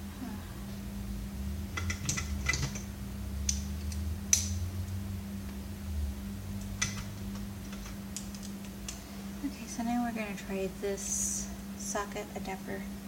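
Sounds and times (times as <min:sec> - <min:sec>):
steady low hum: 0:00.0 - 0:13.0
small tools clicking and tapping: 0:06.6 - 0:09.0.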